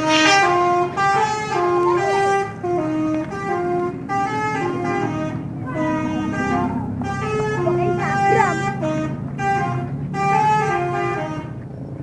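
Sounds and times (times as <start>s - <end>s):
musical bus air horn: 0.0s - 11.6s.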